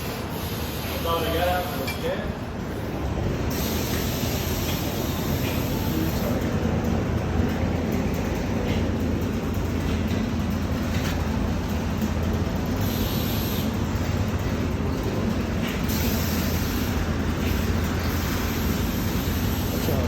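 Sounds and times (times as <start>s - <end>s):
road noise: 0.0s - 20.0s.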